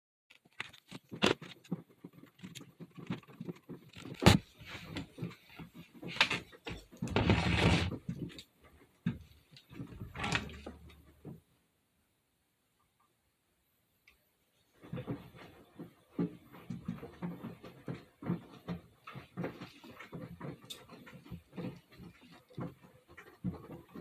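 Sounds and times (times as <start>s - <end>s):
scraping and rustling: 0.3s - 11.4s, 14.6s - 24.0s
hand tools clicking and tapping: 15.7s - 24.0s.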